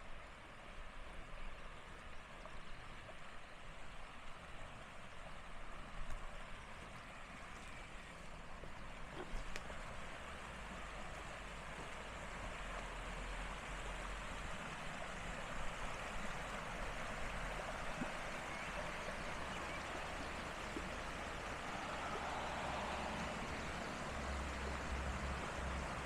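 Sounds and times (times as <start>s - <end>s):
rainwater stream rushing: 6.6s - 26.0s.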